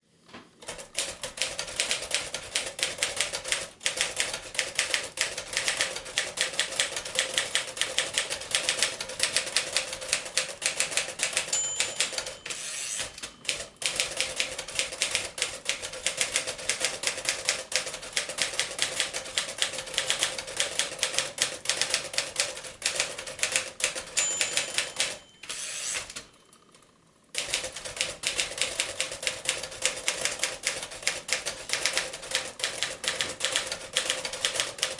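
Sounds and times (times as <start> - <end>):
typewriter carriage return: 0.6 - 26.3, 27.4 - 34.9
typewriter typing: 0.6 - 26.3, 27.4 - 34.9
typewriter bell ringing: 11.0 - 14.5, 23.9 - 26.3.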